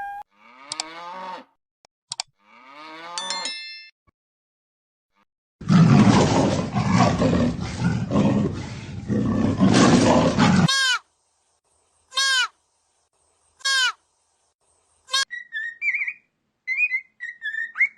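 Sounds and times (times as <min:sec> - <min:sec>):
animal rough noisy call: 0:05.6 - 0:10.7
falling whistle-like calls: 0:15.2 - 0:17.9.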